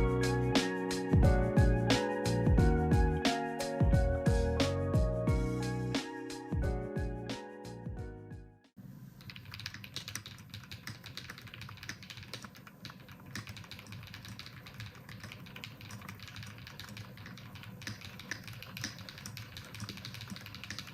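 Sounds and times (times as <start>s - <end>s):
typing on mechanical keyboard: 9.2s - 20.9s.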